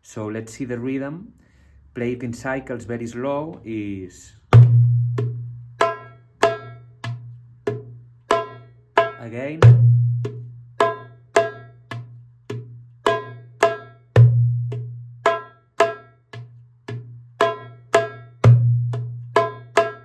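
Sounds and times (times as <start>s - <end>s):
darbuka strokes: 4.5s - 20.0s.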